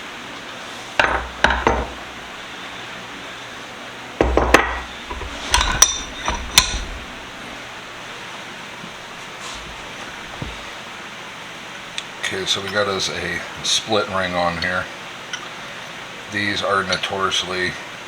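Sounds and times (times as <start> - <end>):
metal parts knocking: 1.0 - 2.0, 4.2 - 7.4
ringing metal clinks: 5.5 - 7.0.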